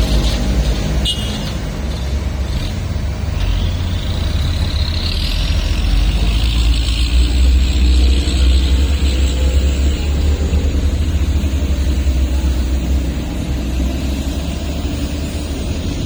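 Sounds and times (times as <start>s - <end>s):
diesel machinery rumbling: 0.0s - 16.0s.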